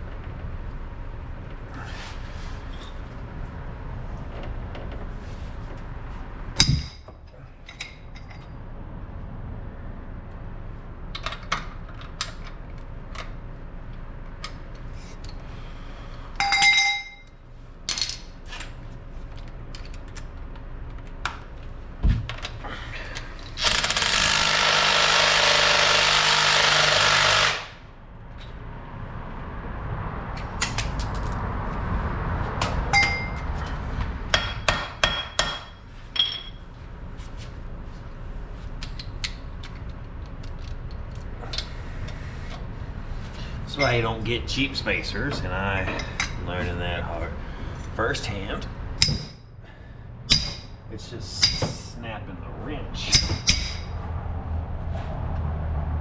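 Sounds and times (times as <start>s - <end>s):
impact wrench hammering: 6.6s - 7.1s, 23.6s - 27.8s, 34.3s - 36.5s, 49.0s - 49.4s, 50.3s - 50.8s, 53.1s - 53.9s
tools clinking on metal: 16.4s - 18.3s, 34.5s - 36.6s, 53.1s - 53.9s.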